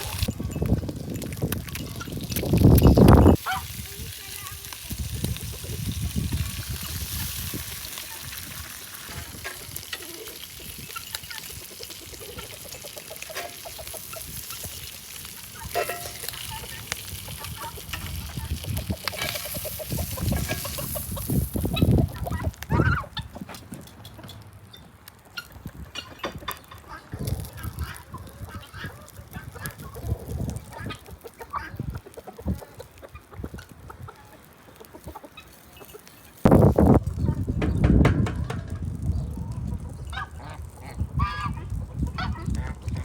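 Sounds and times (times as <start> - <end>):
poultry honking and clucking: 3.3 - 3.8, 7.2 - 24.4, 25.2 - 36.4, 39.8 - 43.0.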